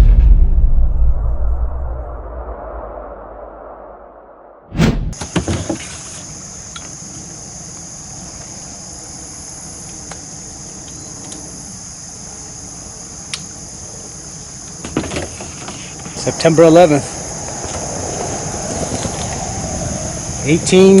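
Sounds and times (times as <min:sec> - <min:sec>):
outdoor background noise: 0:00.9 - 0:21.0
insects trilling: 0:05.2 - 0:21.0.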